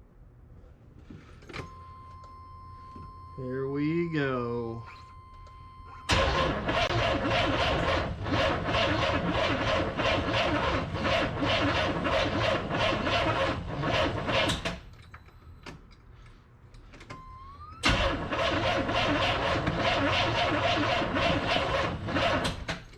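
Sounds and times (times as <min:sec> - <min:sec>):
car engine cranking on starter: 0:05.9 - 0:15.0, 0:17.6 - 0:22.9.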